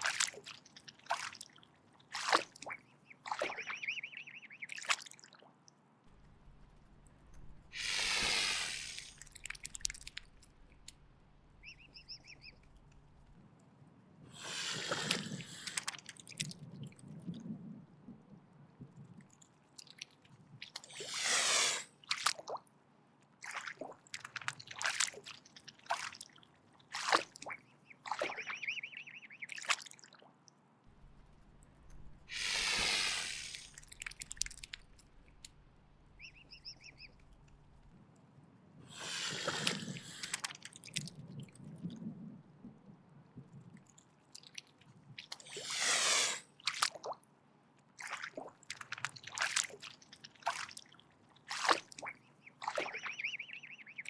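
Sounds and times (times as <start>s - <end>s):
swan hissing: 7.5s - 9.8s, 14.3s - 15.9s, 20.9s - 22.0s, 32.0s - 35.2s, 38.9s - 40.5s, 45.4s - 46.6s.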